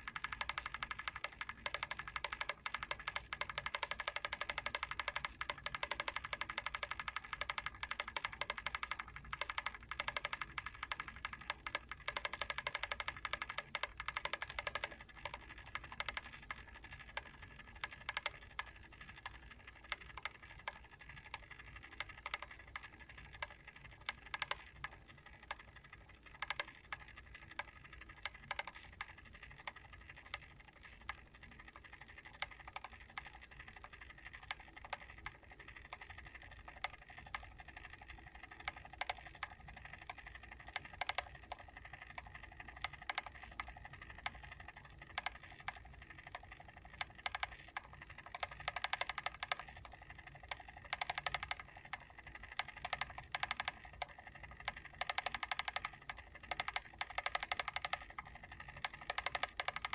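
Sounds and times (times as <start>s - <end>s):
mechanical timer switch clicking: 0.0s - 59.9s.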